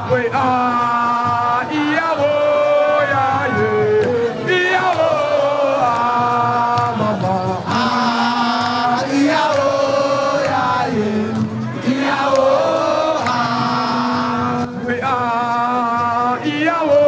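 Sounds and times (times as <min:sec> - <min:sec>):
voices singing a chant: 0:00.0 - 0:17.0.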